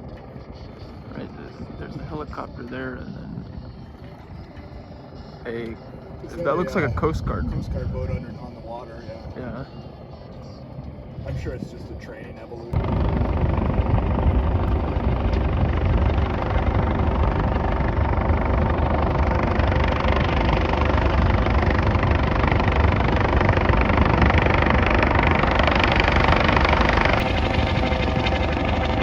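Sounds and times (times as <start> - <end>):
helicopter hovering: 0.0 - 29.0.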